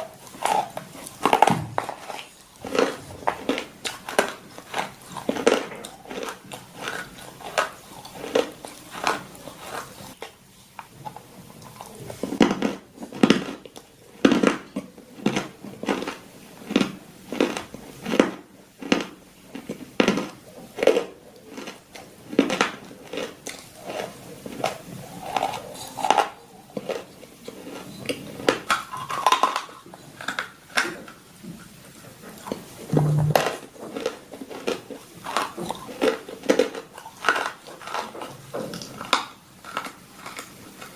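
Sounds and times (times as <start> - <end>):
dog chewing crunchy food: 0.0 - 40.9.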